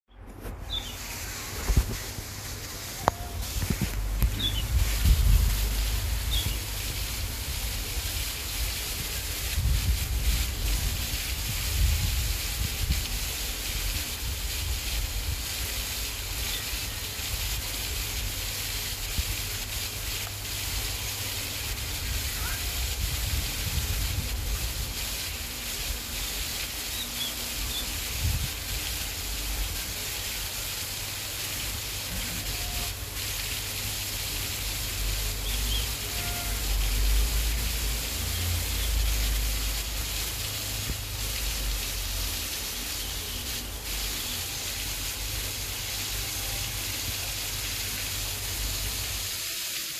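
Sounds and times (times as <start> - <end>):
steady hiss: 0.2 - 49.9
wind rumble on microphone: 3.0 - 15.5, 22.0 - 25.0, 27.9 - 28.8.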